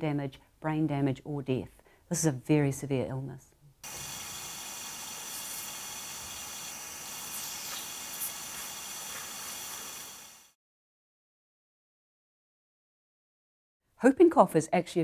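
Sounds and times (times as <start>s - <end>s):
steady hiss: 3.8s - 10.6s.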